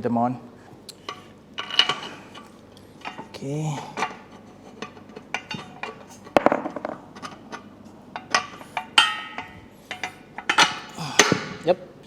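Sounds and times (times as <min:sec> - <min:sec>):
bolts clinking on steel: 0:01.0 - 0:11.6
ringing metal clink: 0:08.2 - 0:11.4.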